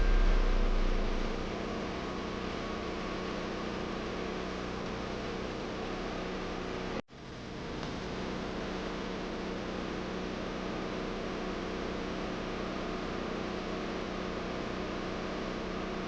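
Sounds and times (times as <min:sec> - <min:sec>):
generator humming: 0:00.0 - 0:05.6.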